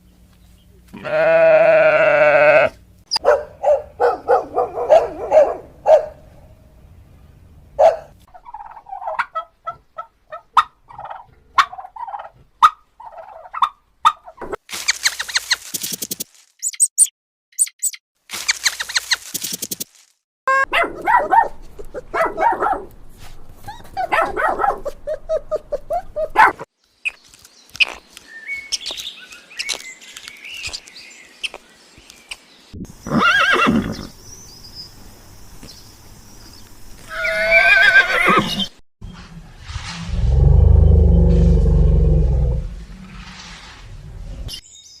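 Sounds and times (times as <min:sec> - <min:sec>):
horses neighing: 0:01.0 - 0:02.8, 0:33.0 - 0:34.1, 0:37.1 - 0:38.7.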